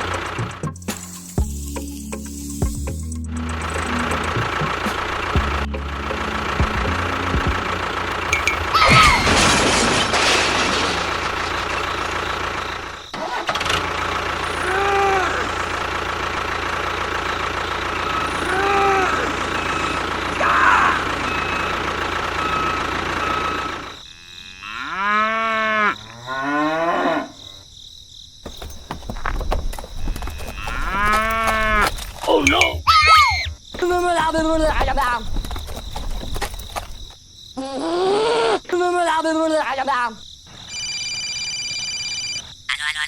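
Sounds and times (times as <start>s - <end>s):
cattle mooing: 24.1s - 27.6s, 30.3s - 32.6s.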